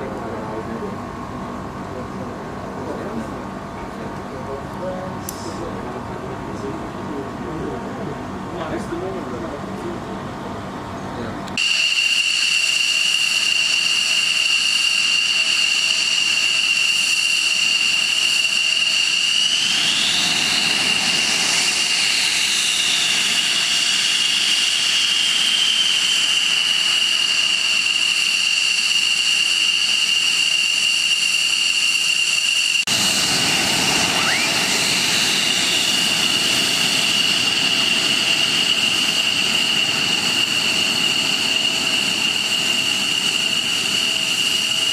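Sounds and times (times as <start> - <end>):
jet engine turbine whine: 0.0 - 44.9
higher whine rising and falling: 26.8 - 44.9.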